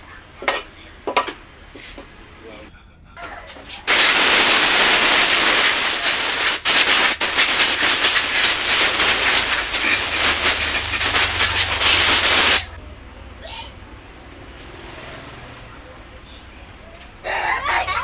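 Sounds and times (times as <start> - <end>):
loud steady hissing: 3.9 - 12.8.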